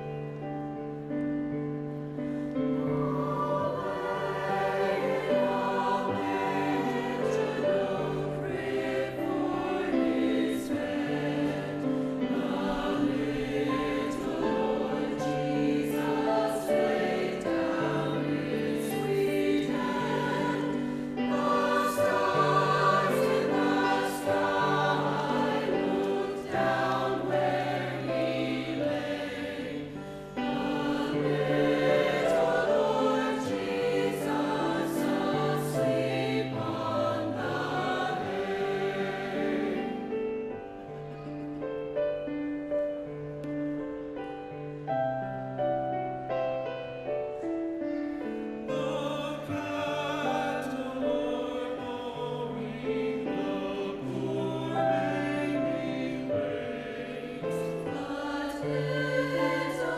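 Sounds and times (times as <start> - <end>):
choir singing in harmony: 0.0 - 59.9.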